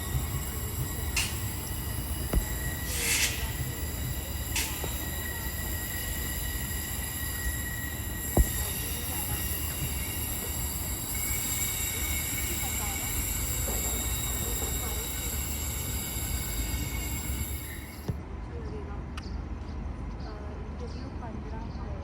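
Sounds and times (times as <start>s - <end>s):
electric train whine: 0.0s - 18.2s
short hisses: 2.9s - 3.6s.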